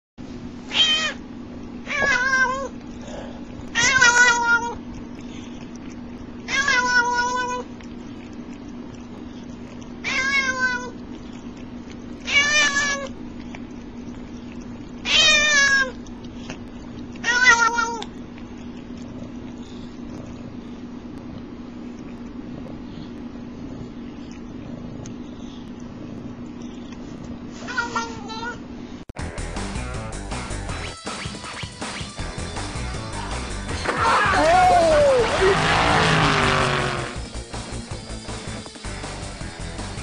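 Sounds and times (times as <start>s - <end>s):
steady low hum: 0.2s - 29.4s
cat meowing: 0.7s - 1.2s, 1.9s - 2.8s, 3.7s - 4.8s, 6.5s - 7.7s, 10.0s - 11.0s, 12.2s - 13.1s, 15.0s - 16.0s, 17.2s - 18.1s.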